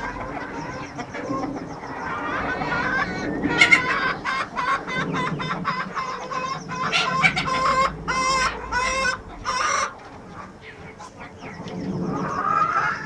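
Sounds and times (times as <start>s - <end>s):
chickens clucking and calling: 0.0s - 13.0s.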